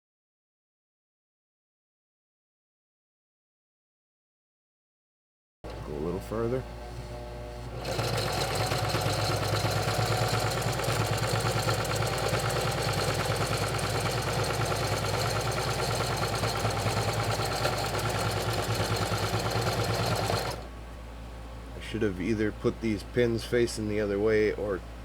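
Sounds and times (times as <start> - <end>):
electric sewing machine stitching: 5.7 - 20.7.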